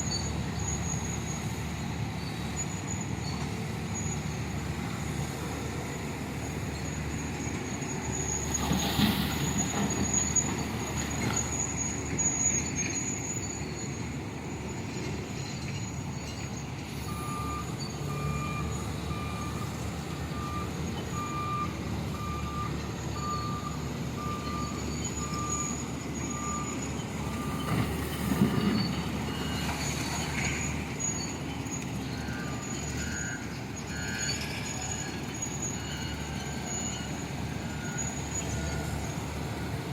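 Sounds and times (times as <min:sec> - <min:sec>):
heavy diesel machinery running: 0:00.0 - 0:39.9
reversing alarm beeping: 0:15.5 - 0:39.9.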